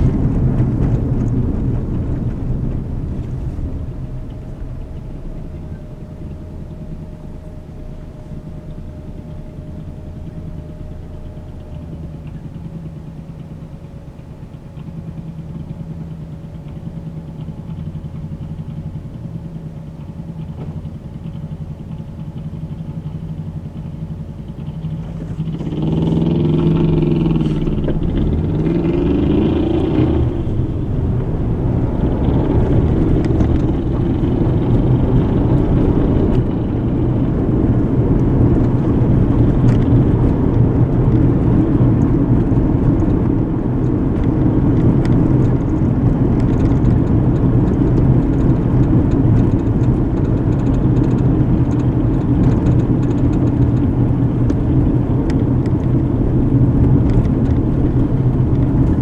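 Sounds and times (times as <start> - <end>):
car road and engine rumble: 0.0 - 59.0
wavering rising and falling tone: 25.5 - 46.4.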